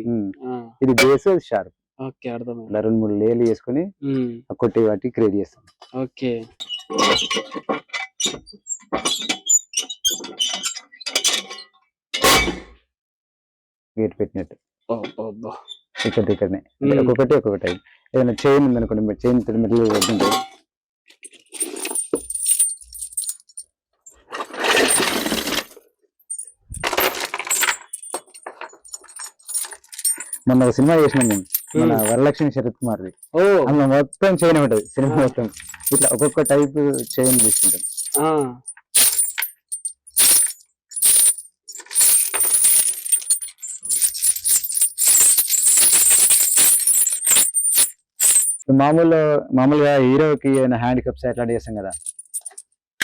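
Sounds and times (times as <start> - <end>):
metal chain jangling: 21.3 - 23.6, 24.6 - 33.4, 34.3 - 48.6, 51.9 - 52.6.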